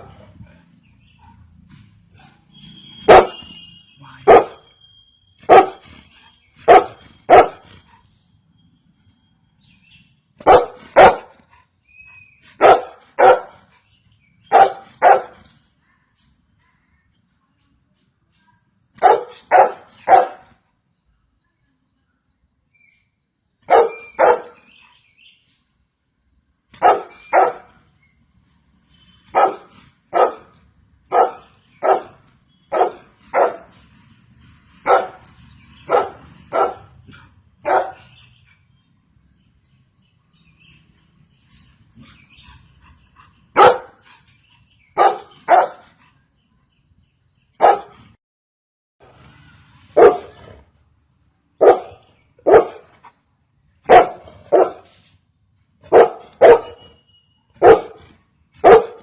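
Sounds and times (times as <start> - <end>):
dog barking: 3.0 - 3.5, 4.2 - 4.7, 5.5 - 5.8, 6.7 - 7.7, 10.4 - 11.3, 12.6 - 13.6, 14.4 - 15.4, 19.0 - 20.5, 23.7 - 24.7, 26.8 - 27.8, 29.3 - 30.5, 31.1 - 33.7, 34.8 - 38.2, 43.5 - 44.0, 45.0 - 45.9, 47.6 - 48.2, 50.0 - 50.4, 51.6 - 52.9, 53.8 - 54.9, 55.8 - 57.0, 57.6 - 59.0.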